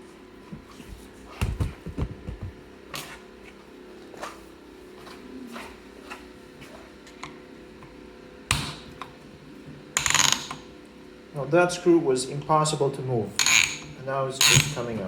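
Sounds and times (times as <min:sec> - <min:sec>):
tool clicking on screw: 0:13.4 - 0:14.8.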